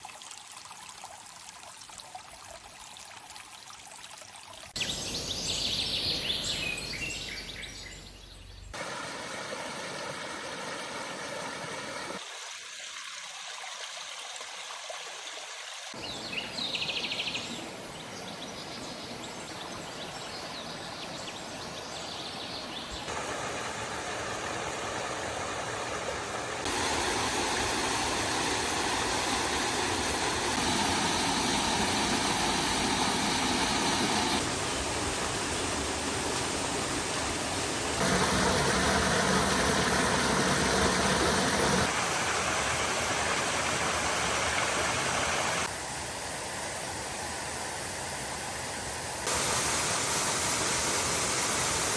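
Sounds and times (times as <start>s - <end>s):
mountain stream rushing: 8.8s - 12.4s, 15.9s - 45.8s.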